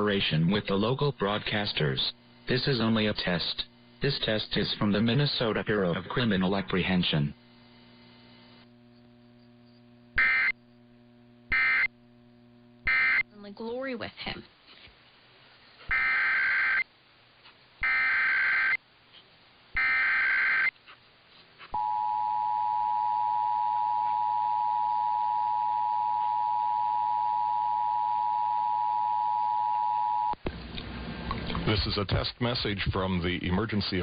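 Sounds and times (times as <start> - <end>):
shrill data tone bursts: 9.6 - 10.6, 11.5 - 11.9, 12.9 - 13.2, 15.9 - 16.9, 17.8 - 18.8, 19.8 - 20.7
steady dual-tone alert signal: 10.2 - 10.6, 11.5 - 12.0, 12.8 - 13.3, 15.9 - 16.8, 17.8 - 18.8, 19.8 - 20.7.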